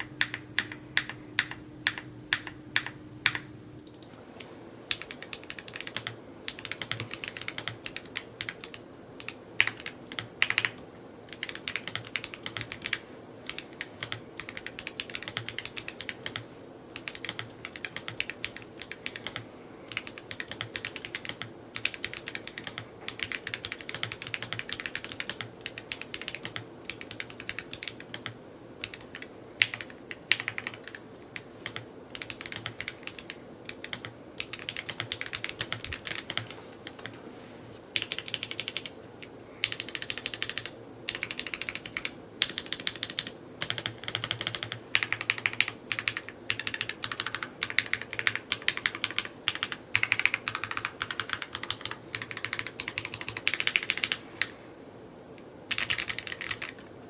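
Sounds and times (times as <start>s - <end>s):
mechanical keyboard typing: 0.0s - 4.1s, 4.9s - 37.2s, 38.0s - 54.5s, 55.7s - 56.9s.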